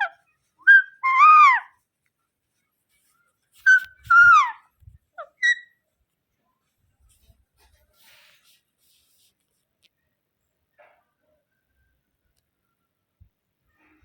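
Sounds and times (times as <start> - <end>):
parrot calling: 0.0 - 1.7, 3.6 - 4.6, 5.2 - 5.7
parrot chirps: 0.0 - 1.7, 3.6 - 4.6, 5.2 - 5.8.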